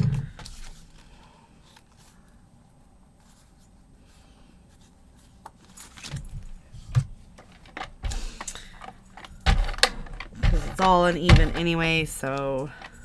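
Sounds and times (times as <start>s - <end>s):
paper rustling: 4.7s - 6.9s.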